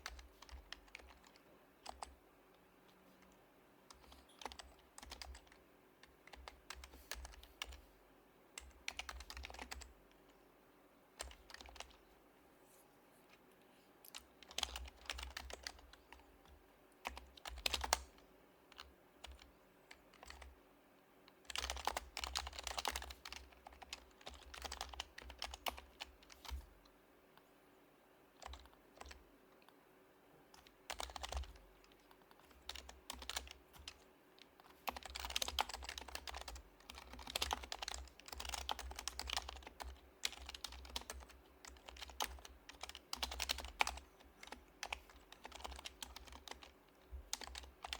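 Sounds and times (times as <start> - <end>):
soft muted keyboard typing: 0.0 - 10.4, 11.1 - 12.2, 13.2 - 27.5, 28.3 - 29.8, 30.4 - 47.9.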